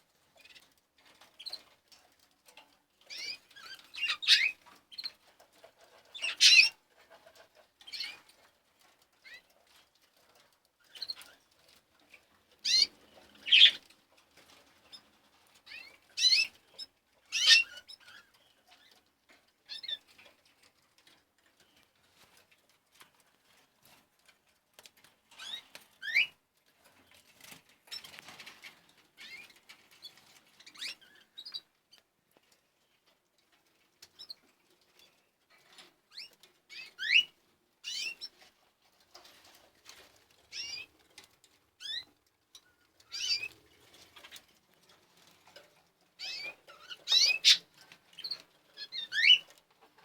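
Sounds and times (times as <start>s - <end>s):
canaries chirping: 3.0s - 8.2s, 9.2s - 9.5s, 12.5s - 19.0s, 19.6s - 20.3s, 25.3s - 26.4s, 27.4s - 31.7s, 35.7s - 38.5s, 39.2s - 40.9s, 41.8s - 44.6s, 45.2s - 50.0s.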